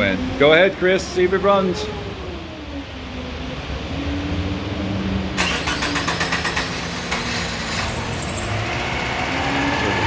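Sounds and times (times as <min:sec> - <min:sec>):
car engine cranking and starting: 0:05.4 - 0:10.0
fast regular engine clatter: 0:05.4 - 0:10.0.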